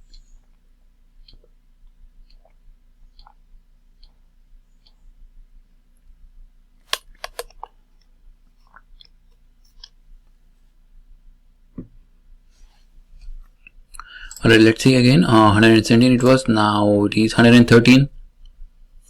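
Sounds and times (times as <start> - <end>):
computer clicks: 6.9 - 7.7.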